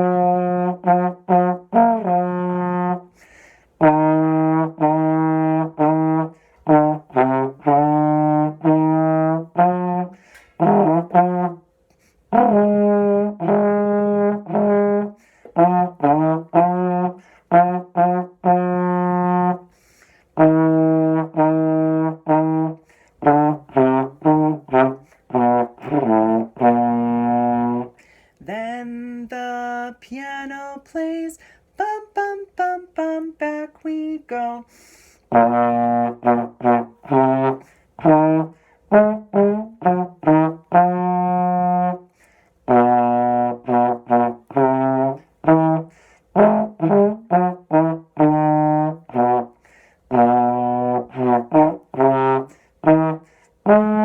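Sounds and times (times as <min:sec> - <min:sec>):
solo trombone melody: 0:00.0 - 0:28.1, 0:28.7 - 0:54.0.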